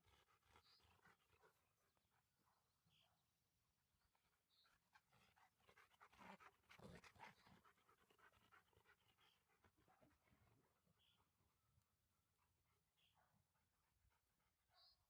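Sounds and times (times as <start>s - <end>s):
dog panting: 0.0s - 3.2s, 3.8s - 15.0s.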